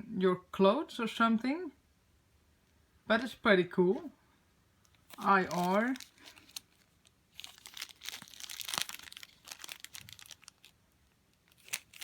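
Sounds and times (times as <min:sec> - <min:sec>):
plastic packaging crinkling: 0:04.8 - 0:12.0.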